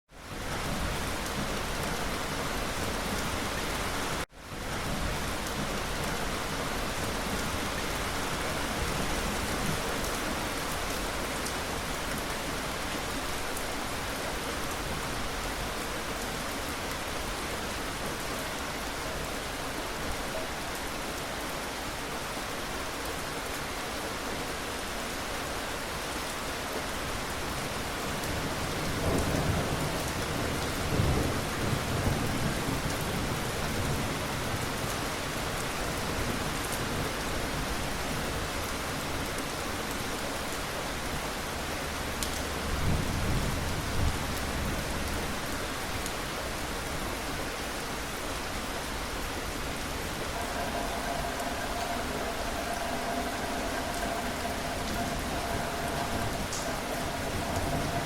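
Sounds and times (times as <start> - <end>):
rain falling on a surface: 0.1 - 58.0
low rumble of thunder: 49.7 - 58.0.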